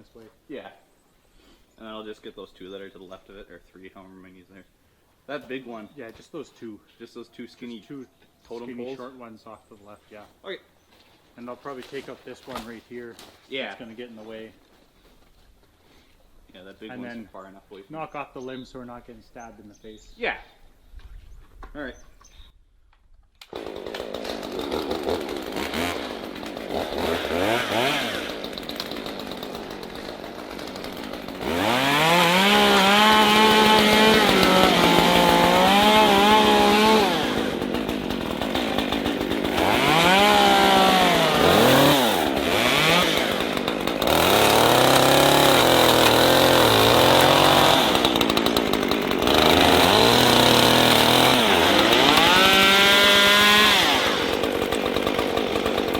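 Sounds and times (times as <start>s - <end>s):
chainsaw revving and cutting: 23.4s - 55.9s.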